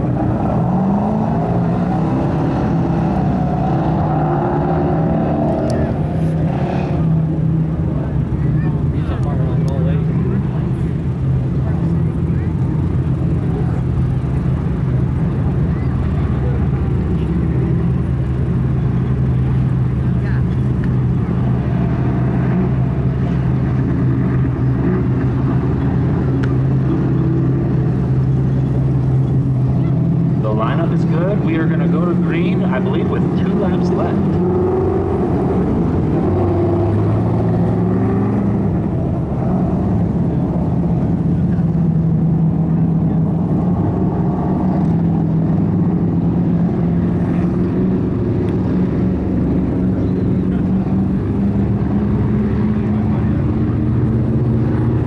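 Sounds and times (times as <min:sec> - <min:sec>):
small race car engines droning: 0:00.0 - 0:55.0.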